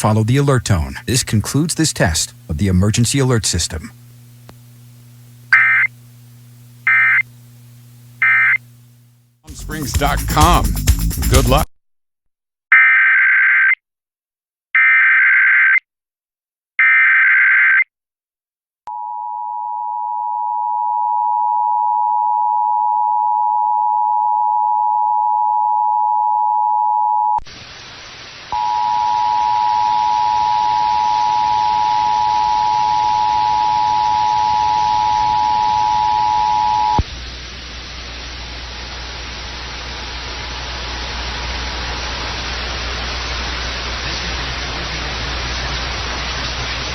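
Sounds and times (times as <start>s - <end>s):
radio static hiss: 0.0s - 11.7s, 27.4s - 46.9s
low hum: 28.8s - 46.9s.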